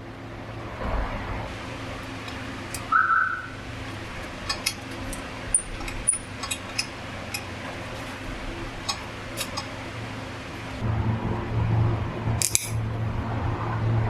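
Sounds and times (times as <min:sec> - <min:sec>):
steady low hum: 0:00.0 - 0:14.0
metal tools clinking: 0:03.9 - 0:10.0, 0:12.4 - 0:12.8.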